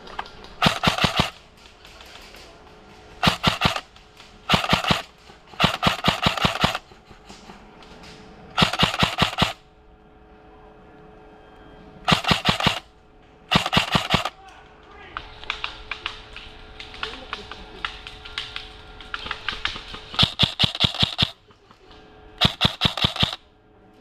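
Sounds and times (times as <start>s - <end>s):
airsoft gun firing bursts: 0.6s - 1.4s, 3.2s - 3.9s, 4.5s - 6.9s, 8.6s - 9.6s, 12.1s - 12.9s, 13.5s - 14.3s, 19.1s - 21.4s, 22.4s - 23.4s.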